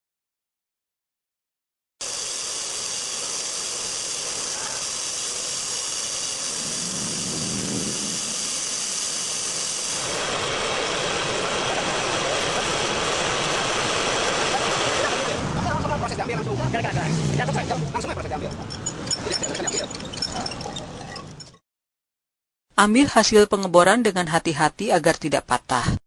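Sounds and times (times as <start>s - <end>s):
core drill cutting pavement: 2.0s - 15.4s.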